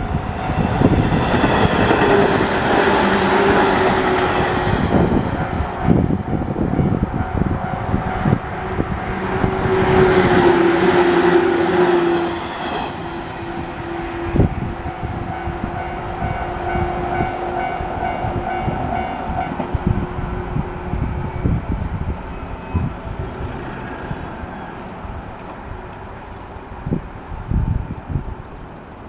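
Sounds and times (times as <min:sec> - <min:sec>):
crossing warning bell ringing: 0:03.4 - 0:09.4, 0:12.3 - 0:25.7.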